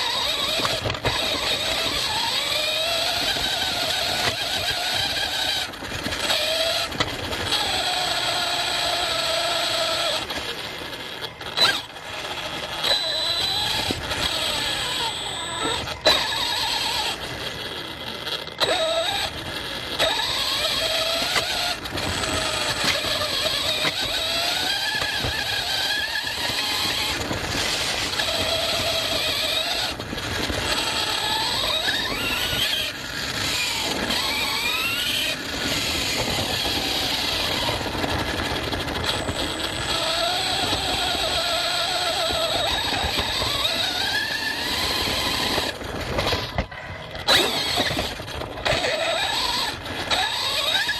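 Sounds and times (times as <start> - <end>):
rc car electric motor whining: 0.0 - 50.9
wheels crunching on rough ground: 0.0 - 50.9.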